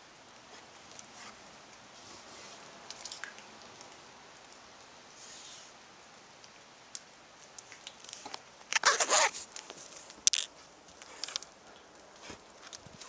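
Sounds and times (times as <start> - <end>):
rasping rustle: 8.1 - 11.5.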